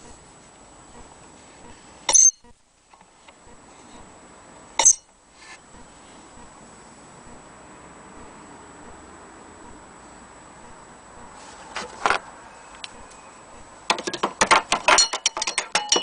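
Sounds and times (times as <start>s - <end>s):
sharp ringing clinks: 2.1s - 2.4s, 4.8s - 5.1s.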